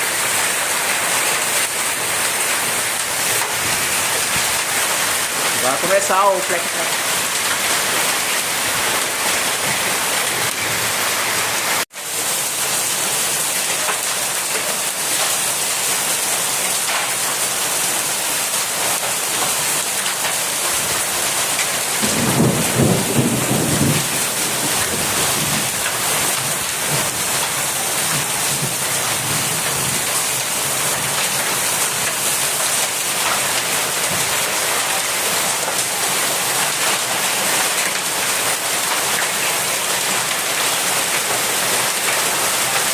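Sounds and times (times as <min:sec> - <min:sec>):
heavy rain pouring: 0:00.0 - 0:42.9
low rumble of thunder: 0:22.0 - 0:25.9.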